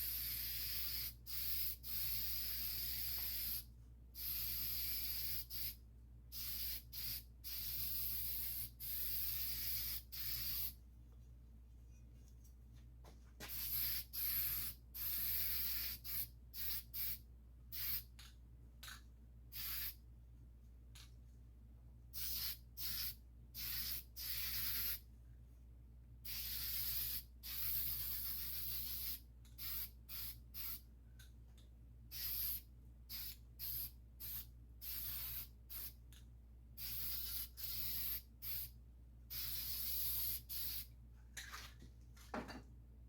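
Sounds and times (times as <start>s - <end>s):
spray paint can hissing: 0.0s - 10.8s, 13.4s - 18.2s, 19.5s - 20.0s, 22.2s - 25.0s, 26.2s - 30.8s, 32.1s - 36.0s, 36.8s - 38.7s, 39.3s - 40.9s.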